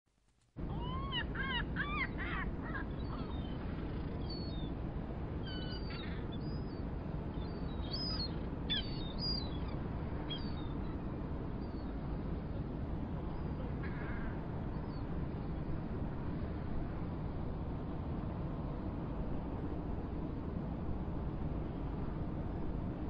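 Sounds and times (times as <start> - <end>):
low harbor rumble: 0.6 - 23.0
seagulls calling: 0.7 - 4.6, 5.4 - 6.8, 7.5 - 10.9.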